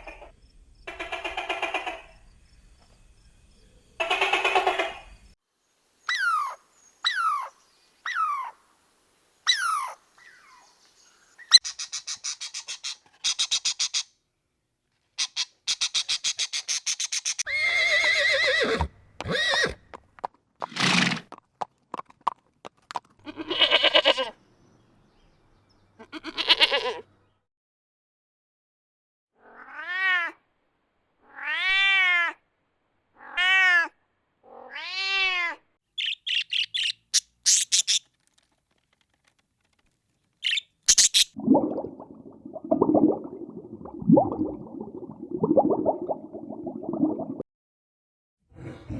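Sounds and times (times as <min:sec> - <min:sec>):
falling chirps: 0:36.0 - 0:38.1, 0:40.4 - 0:41.4.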